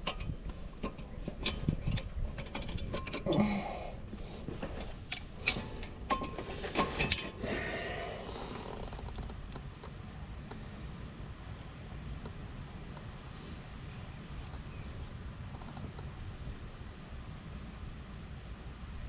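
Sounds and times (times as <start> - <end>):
tools clinking against metal: 0.0 - 3.5, 4.5 - 7.4.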